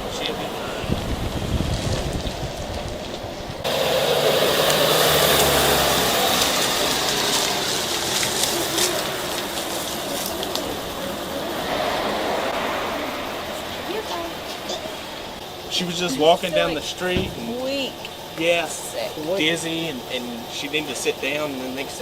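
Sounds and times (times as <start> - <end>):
road and wind noise: 0.0 - 22.0
vehicle engine running: 0.0 - 22.0
steady low hum: 8.2 - 22.0.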